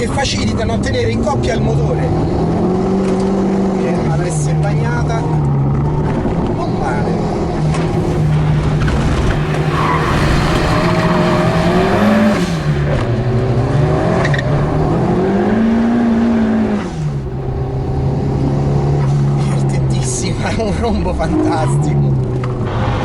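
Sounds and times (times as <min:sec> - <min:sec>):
turbocharged car engine revving: 0:07.6 - 0:19.1.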